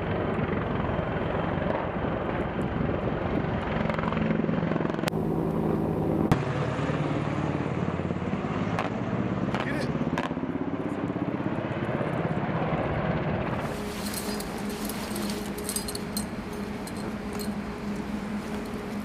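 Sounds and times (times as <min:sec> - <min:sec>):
mechanical drone with low hum: 0:04.9 - 0:08.3, 0:13.2 - 0:19.0.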